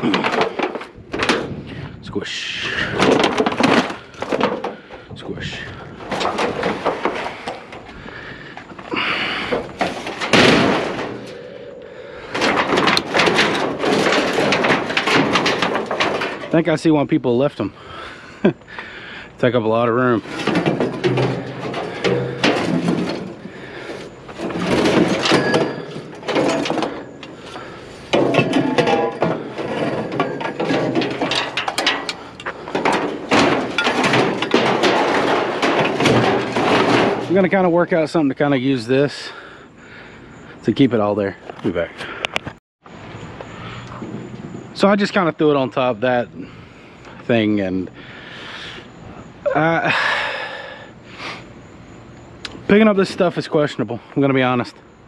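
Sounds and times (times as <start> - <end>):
sheet metal crumpling and clattering: 0.0 - 1.8, 2.4 - 17.1, 19.4 - 39.4
loud metal bang: 9.1 - 16.6, 20.2 - 37.8.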